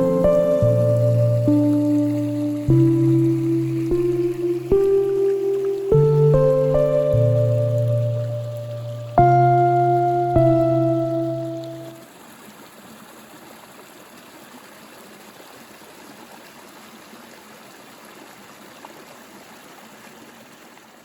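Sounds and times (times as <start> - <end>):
ringing musical tone: 0.0 - 12.0
flowing water rushing: 0.0 - 21.0.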